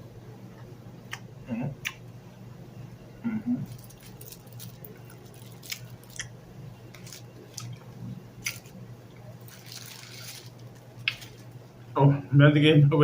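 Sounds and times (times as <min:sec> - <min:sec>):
person chewing candy: 0:03.6 - 0:11.5.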